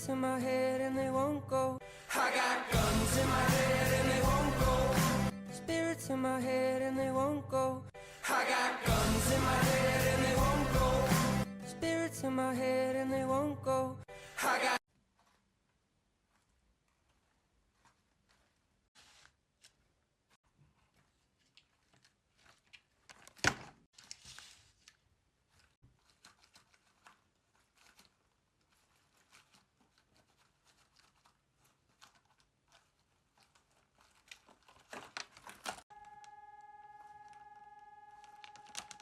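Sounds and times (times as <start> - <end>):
paper crinkling and rustling: 15.0 - 39.0
paper snapping: 25.6 - 35.8, 38.2 - 39.0.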